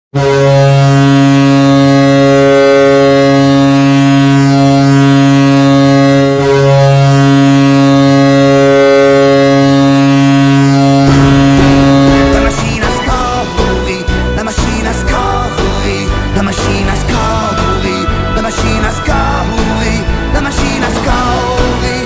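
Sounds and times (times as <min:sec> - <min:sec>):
deep air horn blasts: 0:00.1 - 0:22.0
goal song music: 0:11.1 - 0:22.0.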